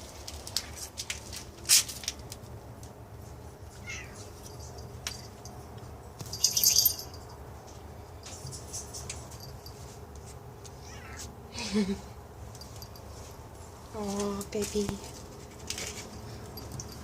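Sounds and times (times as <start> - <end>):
cat chirping: 3.8 - 4.2
cat high-pitched squeaky call: 3.8 - 4.3, 10.8 - 11.3.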